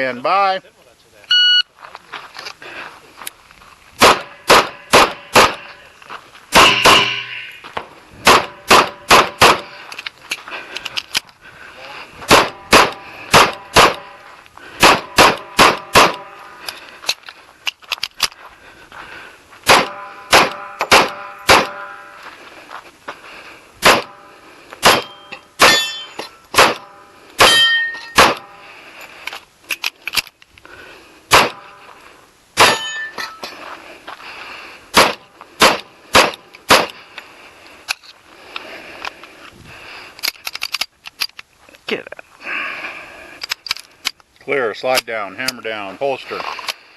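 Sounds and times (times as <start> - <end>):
pistol shots: 4.0 - 5.7, 6.5 - 7.4, 8.2 - 9.8, 12.3 - 14.1, 14.8 - 16.4, 19.6 - 22.0, 23.8 - 24.2, 24.8 - 28.5, 31.3 - 31.6, 32.6 - 33.0, 34.9 - 37.0
metallic ringing: 6.6 - 7.7, 25.0 - 28.6, 32.6 - 33.6.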